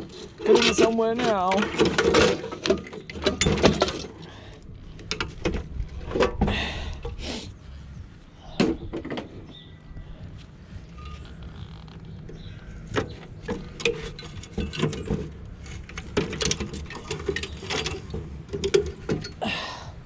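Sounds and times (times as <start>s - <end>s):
metal knocks and clanks: 0.0s - 4.2s, 11.0s - 19.4s
metal scraping: 0.0s - 4.4s, 10.6s - 19.4s.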